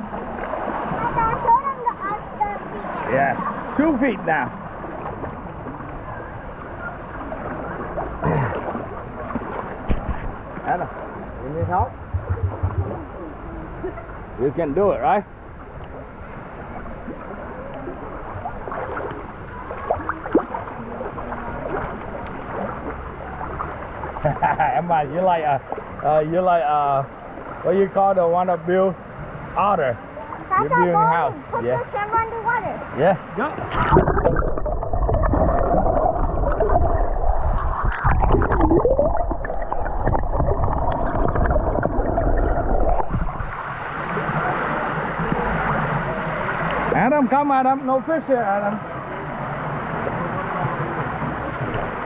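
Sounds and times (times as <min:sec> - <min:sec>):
loud water splashes: 0:00.0 - 0:05.4, 0:31.0 - 0:47.3
muffled water sloshing and splashing: 0:00.0 - 0:14.3, 0:15.4 - 0:26.2, 0:29.0 - 0:47.3
underwater low rumble: 0:04.6 - 0:14.4, 0:33.6 - 0:47.0.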